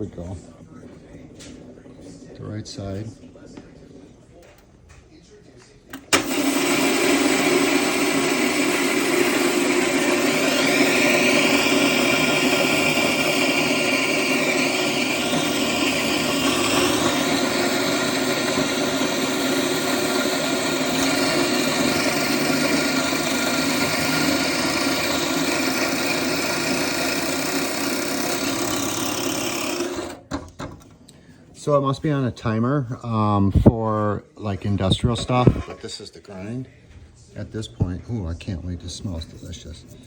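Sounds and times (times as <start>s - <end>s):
coffee grinder whirring: 6.0s - 30.3s, 35.2s - 35.8s.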